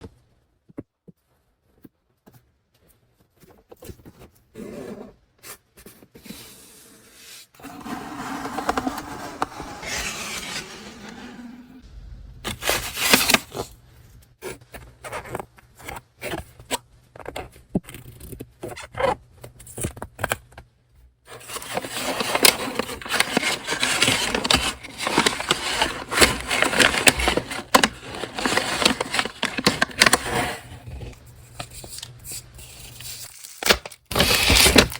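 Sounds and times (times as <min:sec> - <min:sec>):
paper rustling and scraping: 0:07.6 - 0:11.8, 0:12.5 - 0:13.7, 0:21.3 - 0:34.9
packaging taps: 0:21.3 - 0:30.6.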